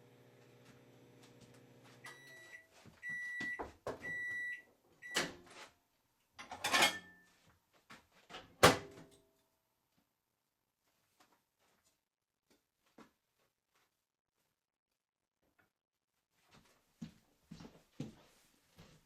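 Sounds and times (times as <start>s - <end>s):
microwave oven humming: 0.0s - 4.5s.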